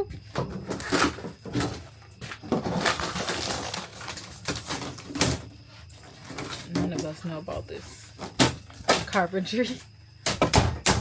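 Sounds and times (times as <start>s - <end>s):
demolition knocks and scrapes: 0.2s - 7.2s.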